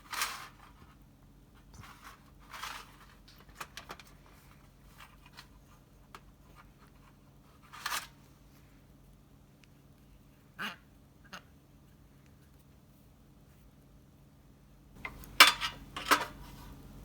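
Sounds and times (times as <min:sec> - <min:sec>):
scraping rustles: 0:00.0 - 0:08.7
small clicks and light rustling: 0:09.5 - 0:10.1.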